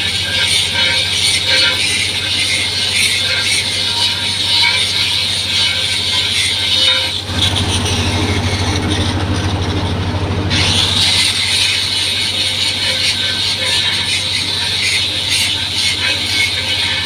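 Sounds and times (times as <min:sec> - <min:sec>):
angle grinder grinding metal: 0:00.0 - 0:17.0
low pulsing hum: 0:00.0 - 0:17.0.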